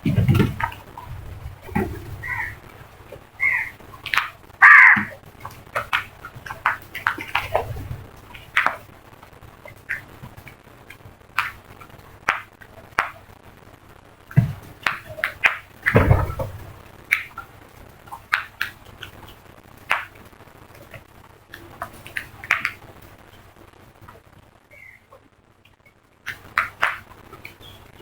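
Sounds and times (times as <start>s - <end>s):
crows cawing: 2.0s - 2.6s, 3.4s - 5.2s
low thuds: 15.9s - 16.9s.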